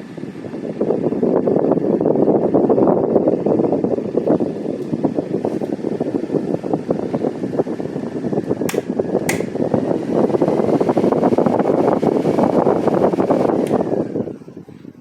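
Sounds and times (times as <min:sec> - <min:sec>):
fan airflow buffeting microphone: 0:00.0 - 0:15.0
sharp clicks: 0:08.7 - 0:09.5.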